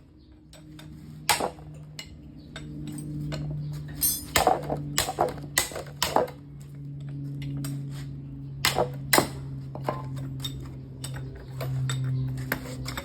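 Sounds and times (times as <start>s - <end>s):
hand tools clinking on metal: 1.8s - 4.8s.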